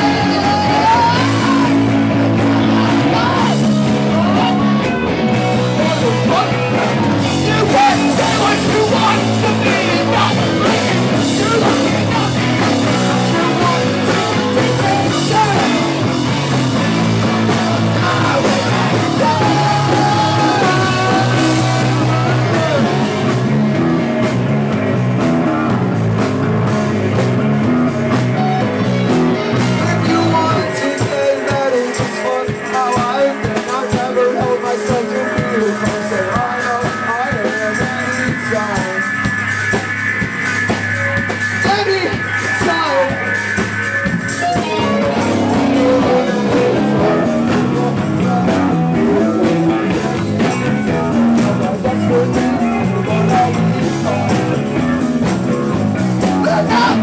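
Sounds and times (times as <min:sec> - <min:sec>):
person singing: 0:00.0 - 0:23.3, 0:29.6 - 0:39.1, 0:44.4 - 0:57.0
electric guitar: 0:00.0 - 0:57.0
live rock band playing: 0:00.0 - 0:57.0.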